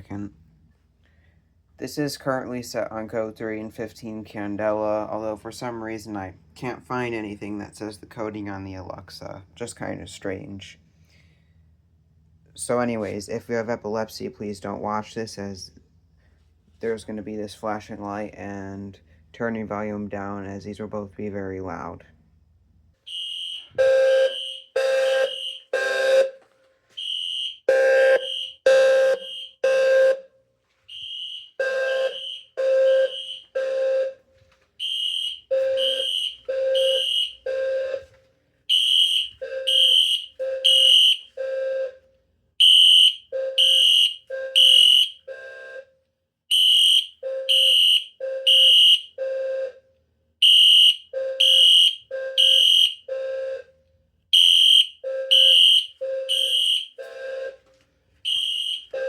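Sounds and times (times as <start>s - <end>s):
low buzzy alarm tone: 23.0s - 30.3s, 30.9s - 45.9s, 46.5s - 49.8s, 50.4s - 53.7s, 54.4s - 59.0s
high-pitched alarm horn blasts: 23.1s - 26.4s, 27.0s - 30.2s, 30.9s - 34.2s, 34.8s - 38.1s, 38.7s - 42.0s, 42.6s - 45.9s, 46.5s - 49.7s, 50.4s - 53.6s, 54.4s - 59.0s.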